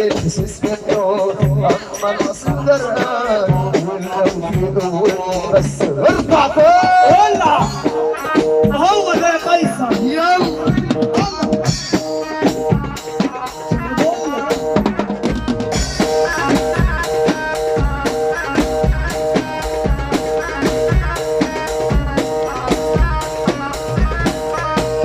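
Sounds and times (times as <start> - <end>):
drum kit beat: 0.0 - 25.0
instrumental melody line: 0.0 - 25.0.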